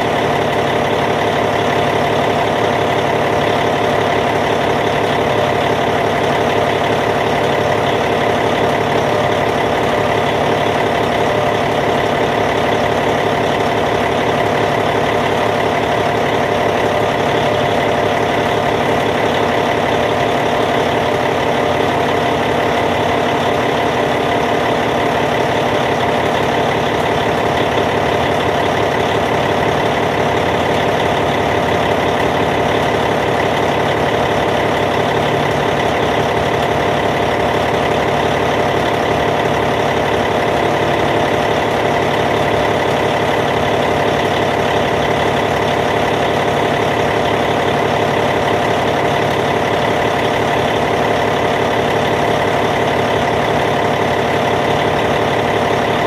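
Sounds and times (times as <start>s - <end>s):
diesel bulldozer idling: 0.0s - 56.0s.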